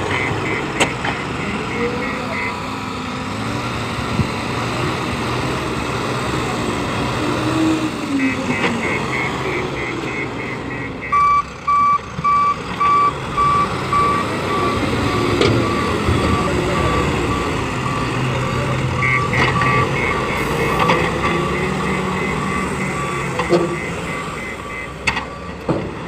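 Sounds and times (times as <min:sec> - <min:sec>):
reversing alarm beeping: 0:00.0 - 0:02.8, 0:07.4 - 0:26.0
diesel engine running: 0:00.0 - 0:26.0
higher quicker reversing beep: 0:08.2 - 0:25.0.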